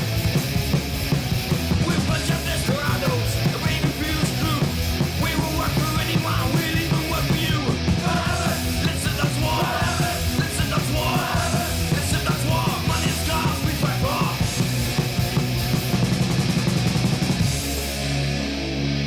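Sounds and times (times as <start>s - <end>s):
distorted guitars: 0.0s - 19.0s
heavy rock music: 0.0s - 19.0s
shouted vocals: 5.2s - 14.6s.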